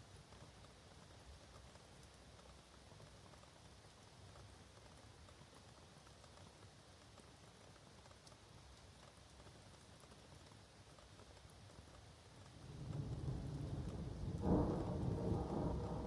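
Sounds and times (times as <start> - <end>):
light rain pattering and dripping: 0.0 - 16.0
thunder rumbling: 12.7 - 16.0.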